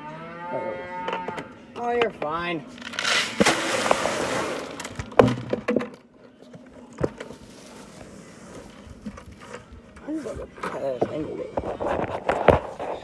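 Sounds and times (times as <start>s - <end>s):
loud rustling scraping noise: 2.7s - 5.1s, 7.3s - 9.6s.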